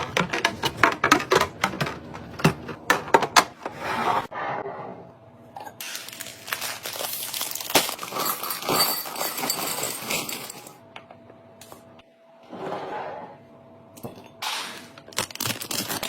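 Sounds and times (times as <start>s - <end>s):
packaging crinkling and rustling: 5.8s - 8.8s, 15.0s - 16.0s.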